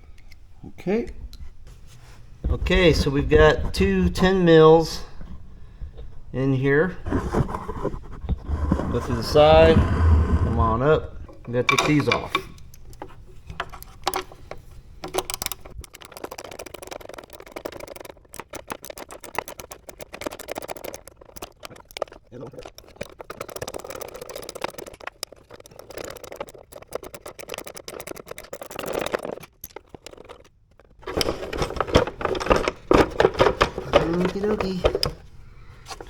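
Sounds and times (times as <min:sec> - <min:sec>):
metal scraping on plastic: 0:06.0 - 0:36.0
ratchet rapid clicking: 0:15.0 - 0:31.0.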